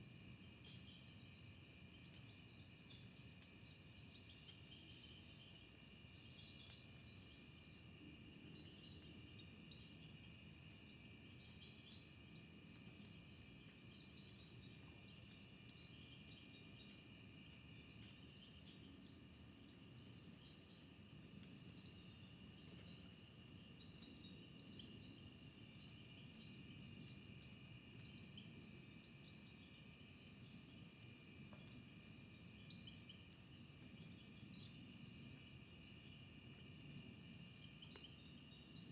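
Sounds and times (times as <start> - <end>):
crickets trilling: 13.7 - 38.9.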